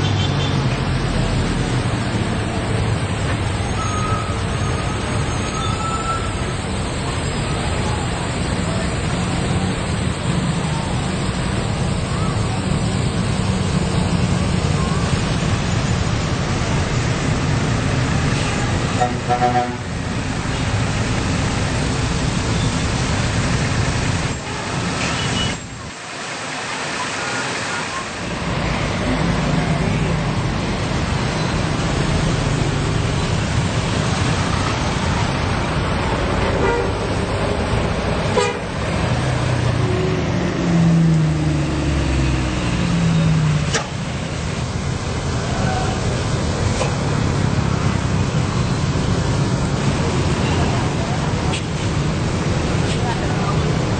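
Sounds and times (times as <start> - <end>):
road traffic rumbling: 0.0 - 53.9
bus multi-tone air horn: 19.0 - 19.9, 36.6 - 37.0, 38.3 - 38.7.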